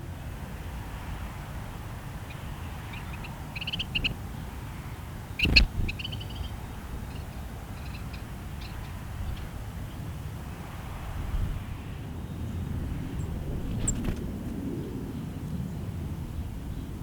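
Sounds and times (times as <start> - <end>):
small birds chirping: 2.0 - 10.1, 13.1 - 14.2.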